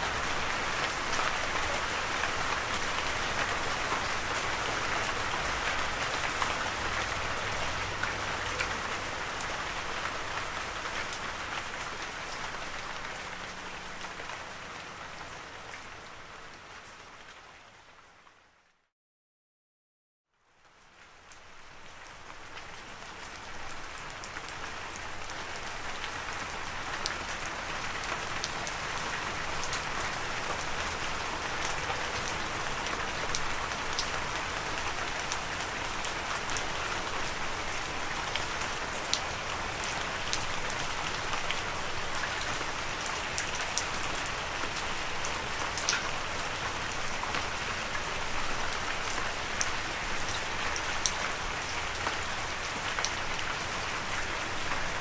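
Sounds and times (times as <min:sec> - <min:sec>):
steady rain hiss: 0:20.9 - 0:55.0.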